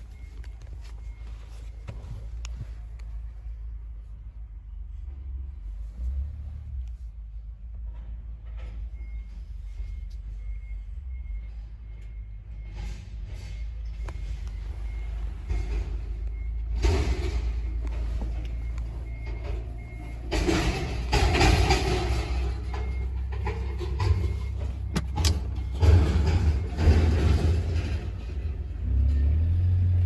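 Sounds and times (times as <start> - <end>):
reversing alarm beeping: 0.0 - 2.4, 8.6 - 28.3
heavy vehicle engine rumbling: 0.0 - 30.0.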